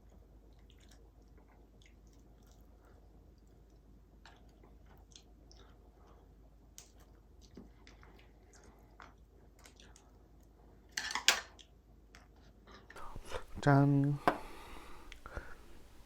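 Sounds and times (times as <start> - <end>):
chewing fish and seafood: 0.0 - 10.9.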